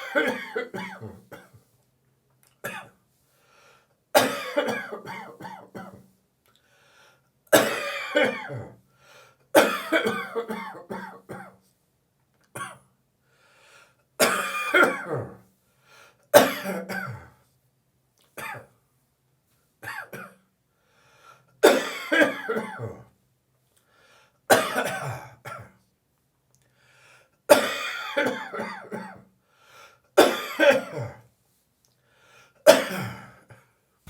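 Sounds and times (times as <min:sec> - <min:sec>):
person coughing: 0:00.0 - 0:01.6, 0:02.6 - 0:02.9, 0:04.2 - 0:06.0, 0:07.5 - 0:08.7, 0:09.6 - 0:11.6, 0:14.2 - 0:15.4, 0:16.4 - 0:17.2, 0:18.4 - 0:18.7, 0:19.8 - 0:20.4, 0:21.6 - 0:23.0, 0:24.5 - 0:25.7, 0:27.5 - 0:29.2, 0:30.2 - 0:31.2, 0:32.7 - 0:33.4
quiet breaths: 0:03.0 - 0:04.1, 0:06.4 - 0:07.4, 0:08.7 - 0:09.5, 0:13.2 - 0:14.2, 0:15.6 - 0:16.3, 0:20.6 - 0:21.6, 0:23.6 - 0:24.5, 0:26.5 - 0:27.4, 0:29.3 - 0:30.2, 0:31.3 - 0:32.6.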